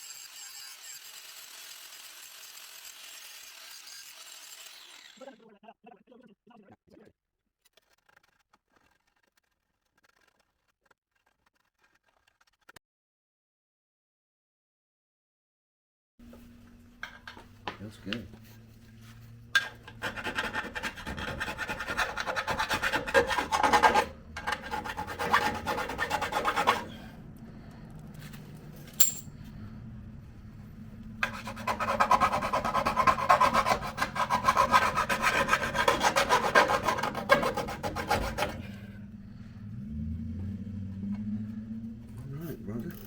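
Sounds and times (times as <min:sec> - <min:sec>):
hand tool scraping: 0:19.0 - 0:27.0, 0:28.9 - 0:29.3, 0:31.2 - 0:38.8.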